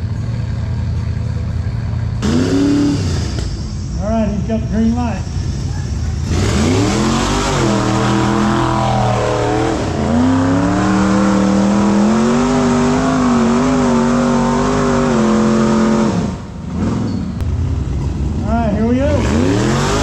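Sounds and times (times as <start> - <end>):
engine revving hard: 2.2 - 3.5, 6.2 - 17.3, 19.0 - 20.0.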